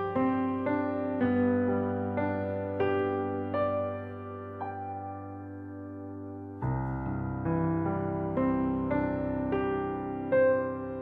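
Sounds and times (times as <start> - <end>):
soft piano notes: 0.0 - 11.0.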